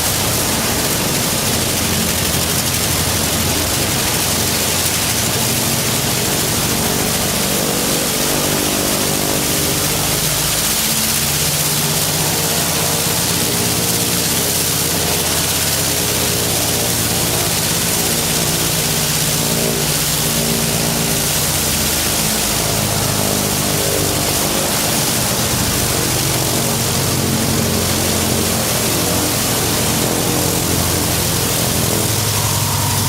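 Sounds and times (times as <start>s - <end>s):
propeller rush: 0.0s - 33.0s
radial aircraft engine running: 0.0s - 33.0s.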